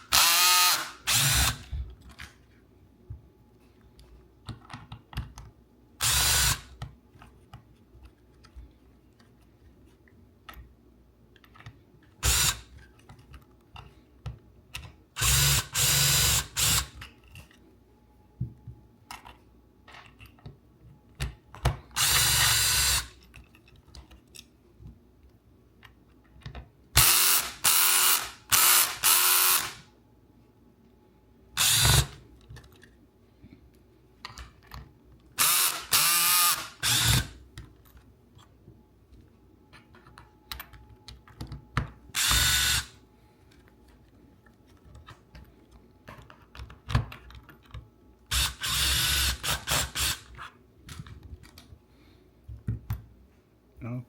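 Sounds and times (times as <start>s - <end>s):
cordless power driver running: 0.1s - 1.7s, 15.2s - 16.9s, 35.4s - 37.3s, 42.2s - 42.9s.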